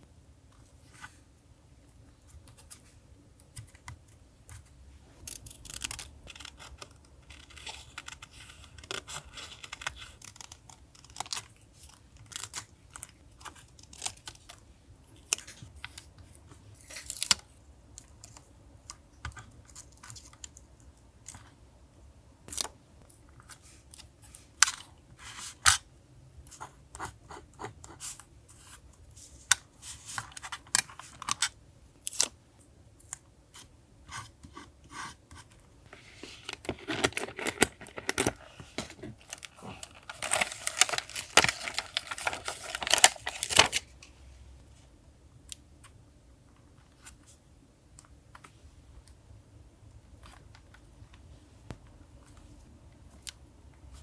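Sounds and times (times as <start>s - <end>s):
paper rustling and rubbing: 35.9s - 43.8s
paper crackling: 35.9s - 43.9s.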